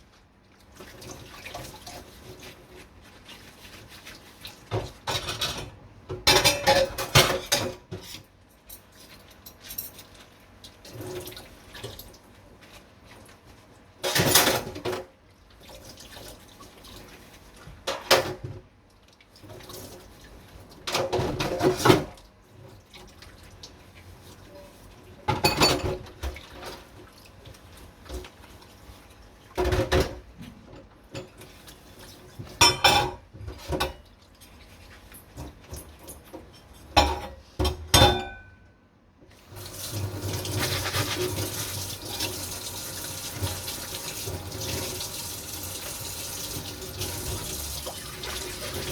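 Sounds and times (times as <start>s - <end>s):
dishes clinking and scraping: 4.7s - 8.2s, 14.0s - 15.0s, 25.3s - 26.4s, 32.5s - 34.0s, 35.4s - 38.6s
tap water running into sink: 39.5s - 48.9s.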